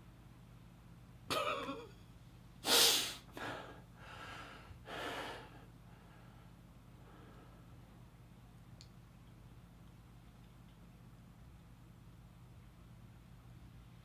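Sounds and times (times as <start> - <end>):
man breathing heavily: 2.7 - 7.8.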